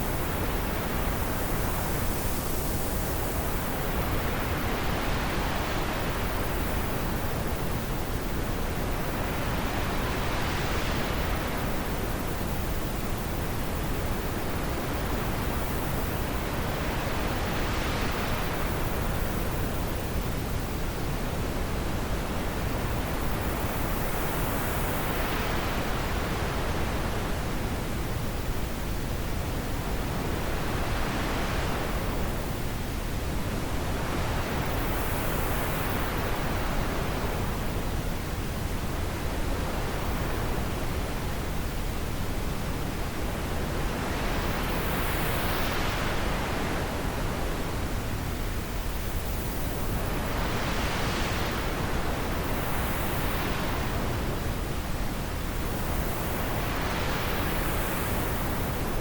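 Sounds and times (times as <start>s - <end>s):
wind blowing in gusts: 0.0s - 59.0s.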